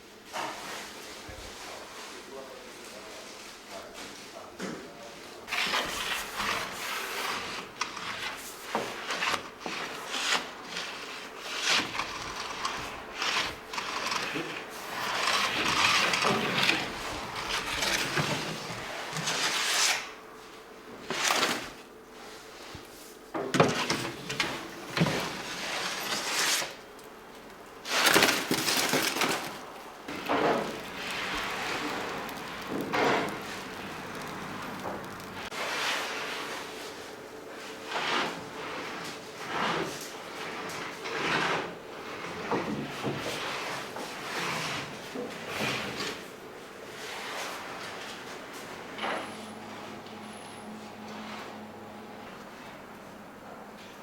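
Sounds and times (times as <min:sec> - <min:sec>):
scraping of wood and metal: 0:05.5 - 0:20.3, 0:20.9 - 0:22.0, 0:23.4 - 0:36.3.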